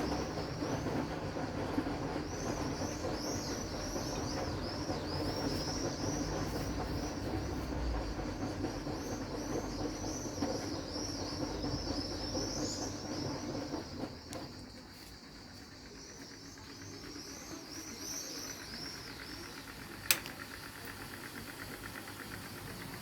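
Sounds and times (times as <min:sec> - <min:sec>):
washing machine drum rumbling: 0:00.0 - 0:14.6.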